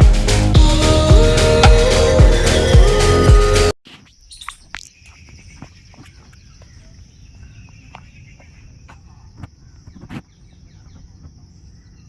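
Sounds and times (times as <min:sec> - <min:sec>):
bird chirps: 0:03.9 - 0:12.0
insects trilling: 0:03.9 - 0:12.0.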